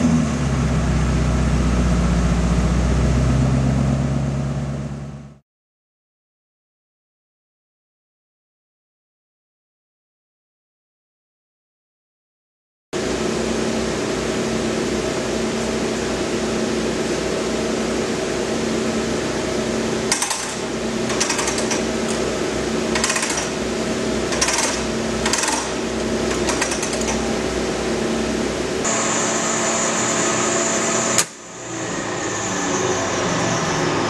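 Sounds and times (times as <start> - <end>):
mechanical hum with low pulsing: 0.0 - 5.4, 13.0 - 34.0.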